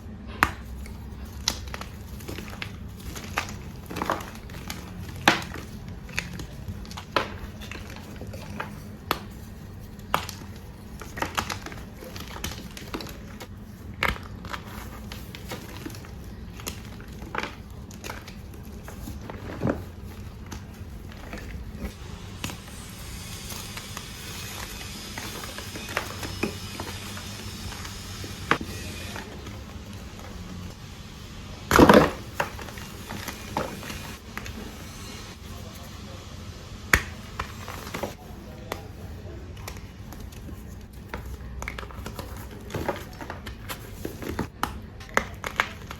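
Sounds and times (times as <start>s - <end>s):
chalk bars crunching: 0.4s - 30.9s, 31.6s - 36.2s.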